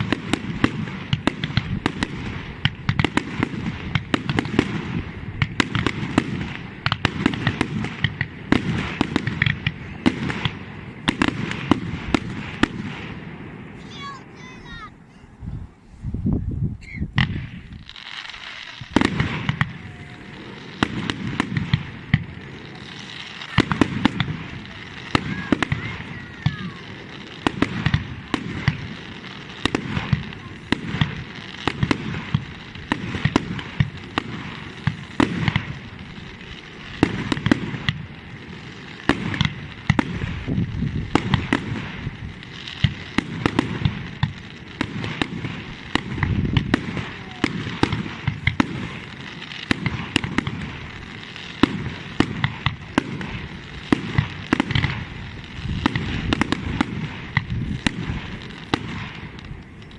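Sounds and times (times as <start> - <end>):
fireworks bursting: 0.0 - 59.9
fireworks crackling: 0.0 - 59.9.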